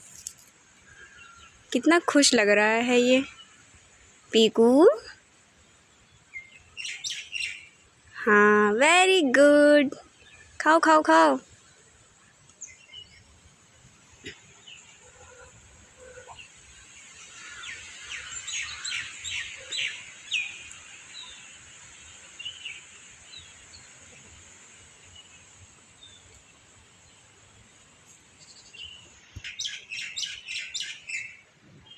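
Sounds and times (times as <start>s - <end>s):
steady high hiss: 0.0s - 31.9s
birds chirping: 5.6s - 8.0s, 10.0s - 31.9s.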